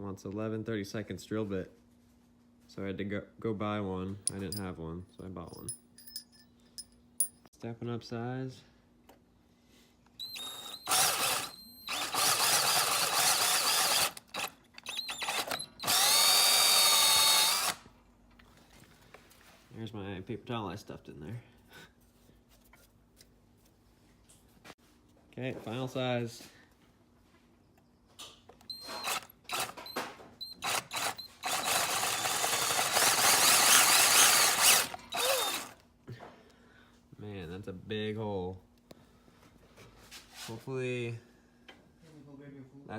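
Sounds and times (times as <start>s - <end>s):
power drill boring a hole: 10.2s - 17.8s, 28.7s - 35.8s.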